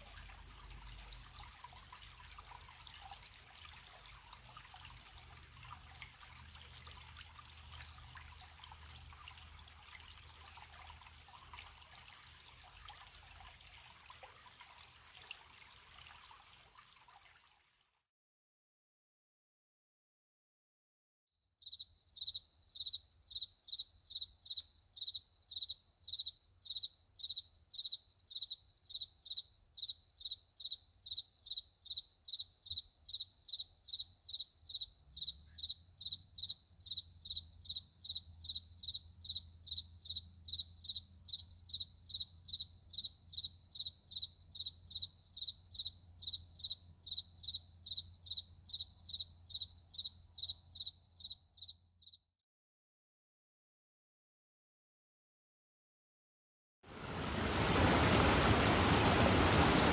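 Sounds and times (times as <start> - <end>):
cricket chirping: 21.6 - 52.2.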